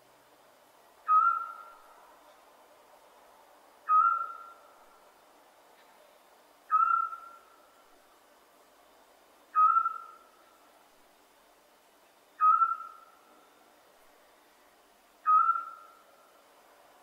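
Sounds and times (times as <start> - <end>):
owl whistled note: 1.1 - 1.7, 3.9 - 4.6, 6.7 - 7.4, 9.6 - 10.2, 12.4 - 13.0, 15.2 - 15.9.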